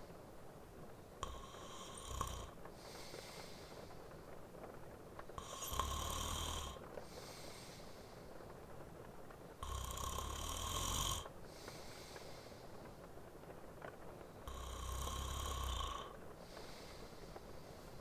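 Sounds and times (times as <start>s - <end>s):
man snoring: 1.2s - 2.6s, 5.4s - 6.9s, 9.6s - 11.3s, 14.5s - 16.2s
soft breathing: 1.2s - 4.4s, 5.4s - 8.6s, 11.1s - 13.2s, 13.9s - 18.0s.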